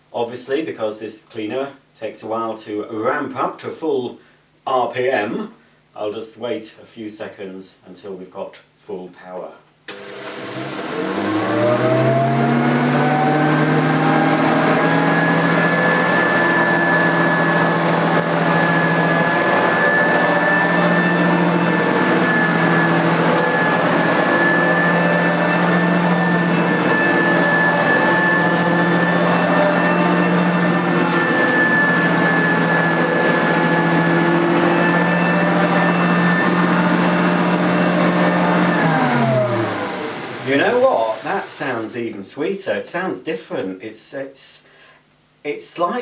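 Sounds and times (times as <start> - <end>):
vacuum cleaner whine: 9.9 - 41.9.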